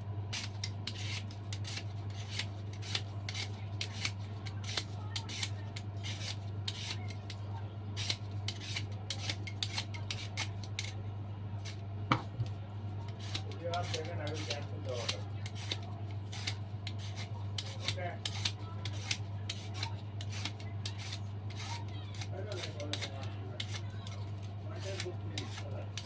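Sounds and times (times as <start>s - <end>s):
blade scraping vegetable skin: 0.3s - 7.4s, 8.0s - 11.0s, 13.0s - 26.0s.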